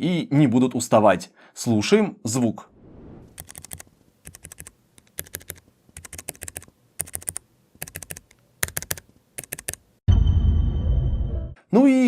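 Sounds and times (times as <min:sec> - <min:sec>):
keyboard typing clicks: 0:03.4 - 0:09.8.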